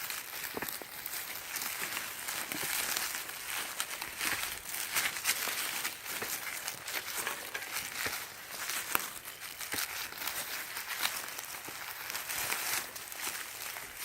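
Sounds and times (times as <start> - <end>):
footsteps crunching dry leaves: 0.0 - 14.0
twigs snapping: 0.0 - 14.0.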